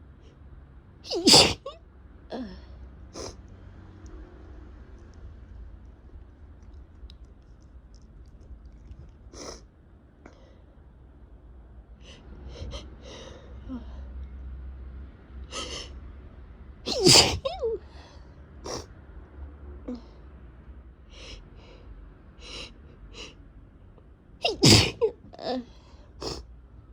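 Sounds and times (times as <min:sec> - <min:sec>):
person sniffing: 0:01.1 - 0:01.6, 0:03.2 - 0:03.4, 0:09.4 - 0:09.6, 0:16.9 - 0:17.5, 0:24.5 - 0:25.0, 0:26.2 - 0:26.4
person sneezing: 0:01.1 - 0:01.7, 0:16.9 - 0:17.7, 0:24.4 - 0:25.1.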